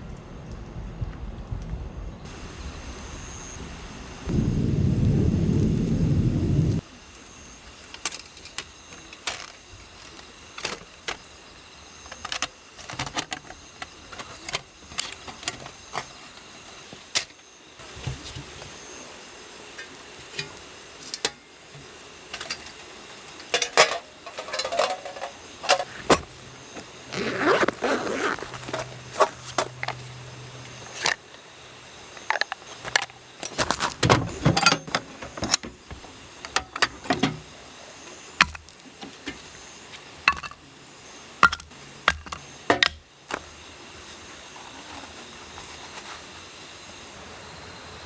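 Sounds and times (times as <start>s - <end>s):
handling clicks and knocks: 23.4s - 26.3s
rustling: 44.4s - 46.6s.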